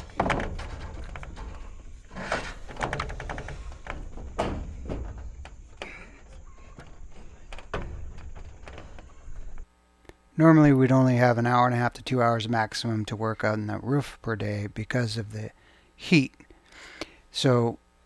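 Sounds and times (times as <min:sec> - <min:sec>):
solar panels knocking and thudding: 0:00.0 - 0:09.7.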